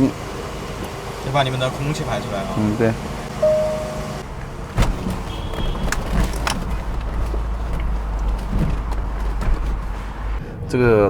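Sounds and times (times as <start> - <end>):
car engine rumbling: 0.0 - 11.0
short beep: 3.4 - 4.2.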